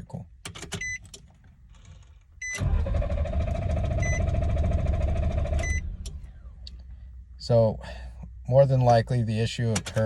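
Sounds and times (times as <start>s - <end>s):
starter cranking engine: 2.6s - 5.7s.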